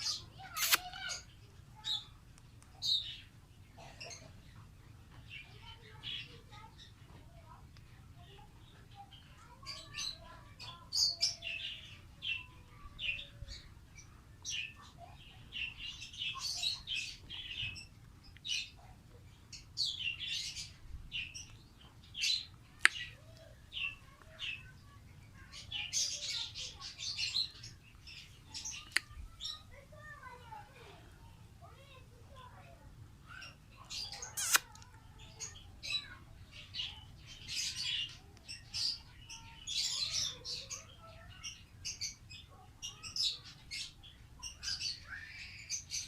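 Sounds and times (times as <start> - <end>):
parrot chirping and calling: 0.0 - 1.3, 33.4 - 34.8.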